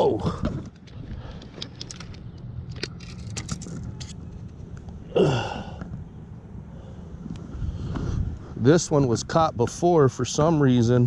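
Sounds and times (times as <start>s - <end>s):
road traffic rumble: 0.0s - 11.0s
small clicks and scrapes: 0.4s - 5.0s.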